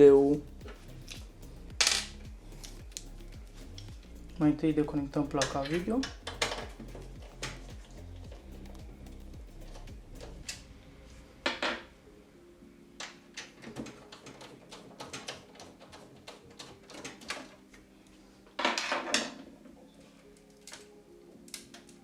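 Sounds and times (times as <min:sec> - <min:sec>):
scraping rattles: 0:00.4 - 0:10.6
hands clicking on computer parts: 0:13.0 - 0:17.9.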